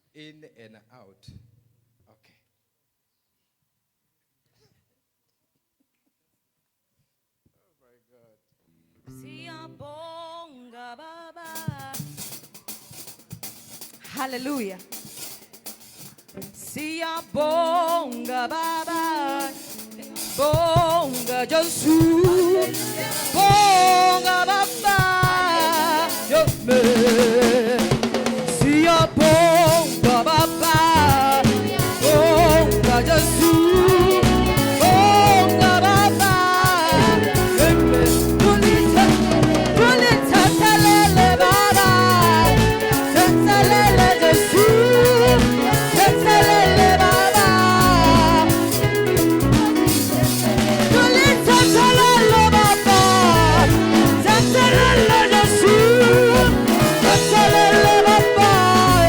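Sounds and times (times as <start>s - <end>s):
drum kit: 11.4s - 59.0s
electric guitar: 16.4s - 59.0s
choir singing: 18.9s - 59.0s
bass guitar: 19.9s - 59.0s.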